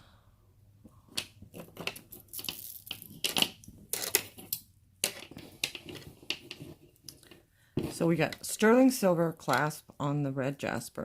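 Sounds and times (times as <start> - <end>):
necklace beads clicking and rustling: 1.1 - 8.7.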